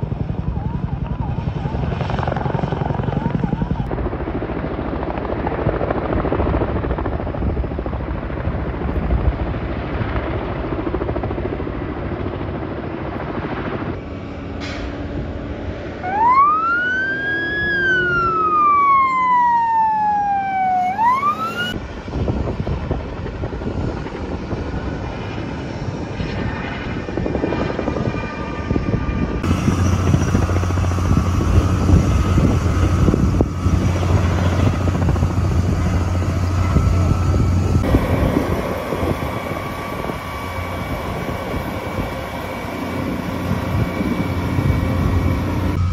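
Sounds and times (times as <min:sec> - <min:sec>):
emergency vehicle siren wailing: 0:15.8 - 0:21.8, 0:27.8 - 0:45.9
engine rumble: 0:29.1 - 0:45.9.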